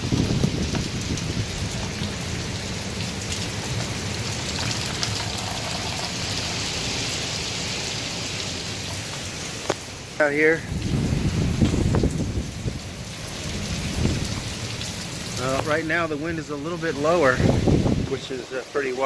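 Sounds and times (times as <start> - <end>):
wind rumbling on microphone: 0.0 - 5.4, 10.6 - 18.4
strong wind: 0.0 - 18.4
heavy rain pouring: 0.0 - 19.0.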